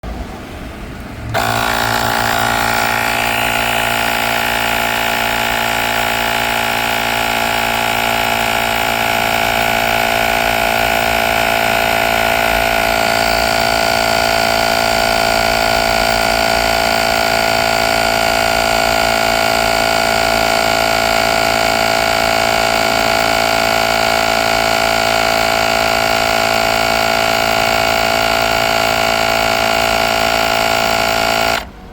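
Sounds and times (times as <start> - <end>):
air compressor whine: 0.0 - 31.9.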